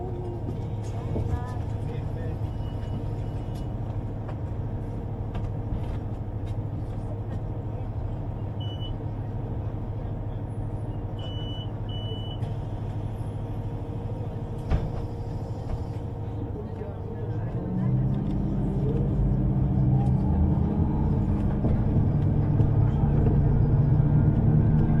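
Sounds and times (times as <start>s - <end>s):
underground train rumbling: 0.0s - 25.0s
thump: 14.7s - 15.1s.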